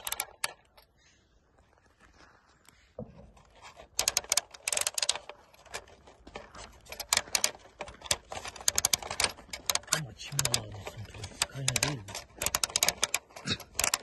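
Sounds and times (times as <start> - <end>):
mechanical clicks and rattles: 0.0 - 0.9, 3.5 - 14.0.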